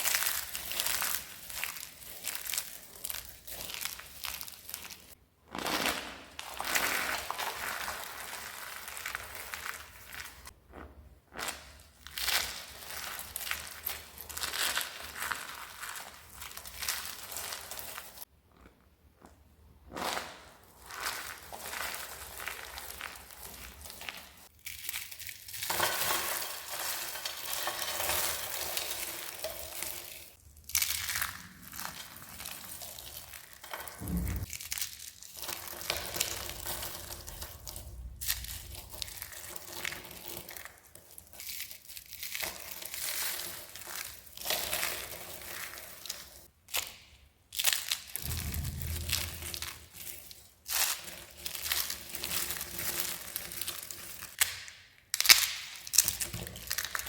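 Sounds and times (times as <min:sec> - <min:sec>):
soap crushed and crumbled by hand: 0:00.0 - 0:57.0
soft low thumps: 0:34.0 - 0:34.4, 0:48.2 - 0:49.8.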